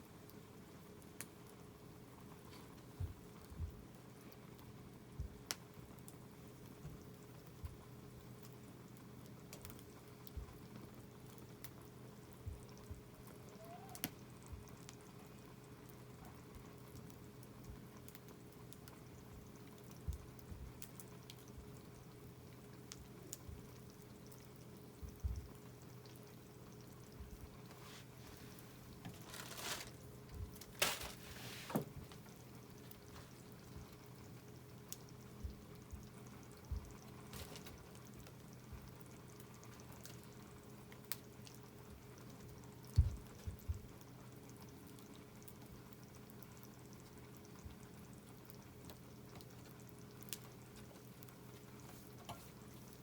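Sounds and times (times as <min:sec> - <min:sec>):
wood fire crackling and popping: 0:00.0 - 0:53.0
wood fire hissing: 0:27.0 - 0:34.2.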